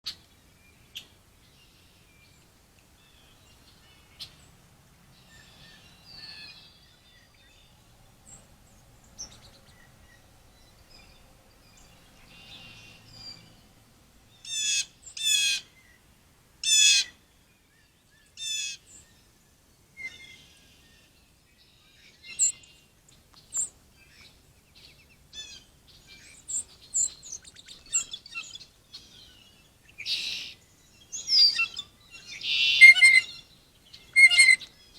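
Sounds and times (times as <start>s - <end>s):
birds calling and chirping: 5.2s - 13.8s, 22.2s - 34.9s
loud fast trilled bird calls: 31.2s - 34.7s.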